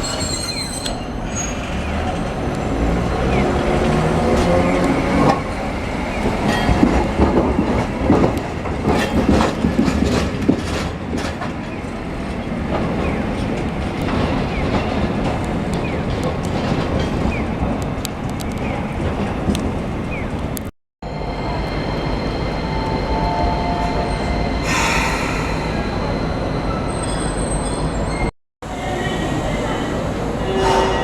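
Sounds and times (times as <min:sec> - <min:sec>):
streetcar wheels clacking: 0:00.0 - 0:20.6
streetcar rolling rumble: 0:00.0 - 0:31.0.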